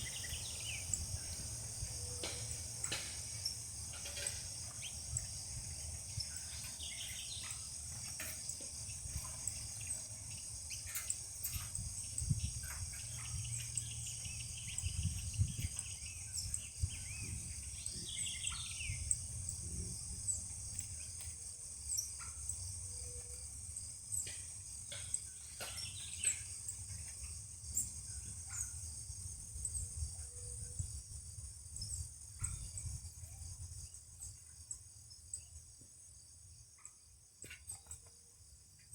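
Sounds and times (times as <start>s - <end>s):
bird chirps: 0.0s - 5.3s, 6.0s - 19.3s, 24.1s - 28.8s
crickets trilling: 0.0s - 38.9s.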